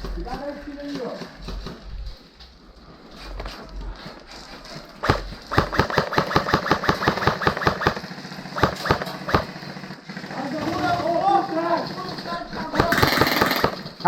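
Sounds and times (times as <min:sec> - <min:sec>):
airsoft gun firing: 0:04.9 - 0:11.0, 0:12.5 - 0:14.0.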